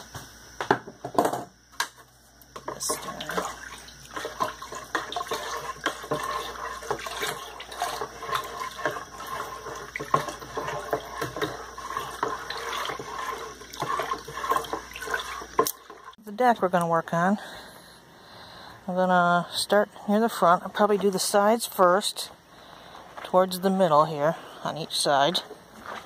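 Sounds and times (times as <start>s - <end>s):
liquid sloshing and splashing: 2.6s - 16.2s, 25.2s - 26.0s.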